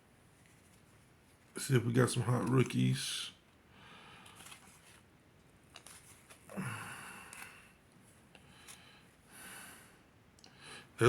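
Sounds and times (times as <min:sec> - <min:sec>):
breathy exhale: 0:06.5 - 0:07.7.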